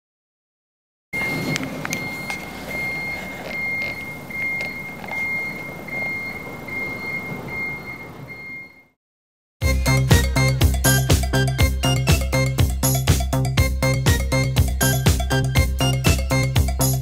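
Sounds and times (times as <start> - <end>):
car wash machine running: 1.2 - 8.8
high warning beep: 1.2 - 9.0.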